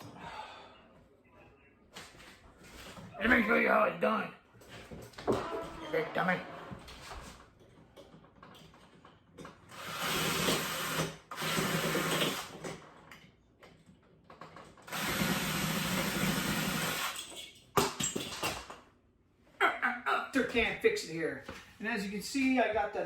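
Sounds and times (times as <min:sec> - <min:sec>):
power drill running: 0:09.7 - 0:12.6, 0:14.9 - 0:17.2.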